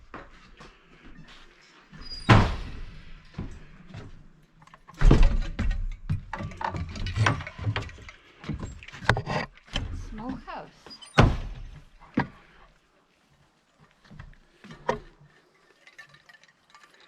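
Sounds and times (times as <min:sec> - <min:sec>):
irregular knocks and thumps: 0:02.0 - 0:10.6, 0:11.2 - 0:12.7
wooden screen door slapping shut: 0:02.1 - 0:03.1, 0:04.9 - 0:07.8, 0:11.0 - 0:11.8.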